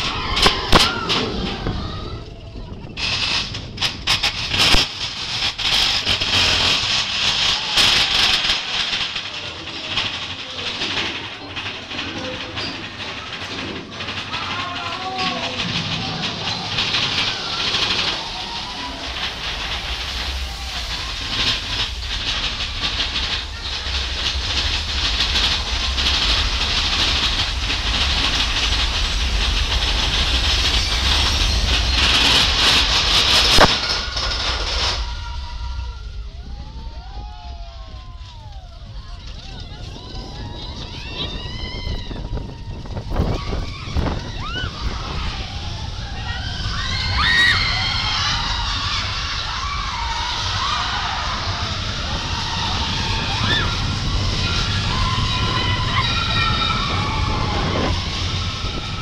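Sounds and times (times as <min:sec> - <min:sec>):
train rumbling on rails: 0:00.0 - 0:59.0
wheels clattering on track: 0:00.0 - 0:59.0
mine train hissing on rails: 0:15.6 - 0:36.3.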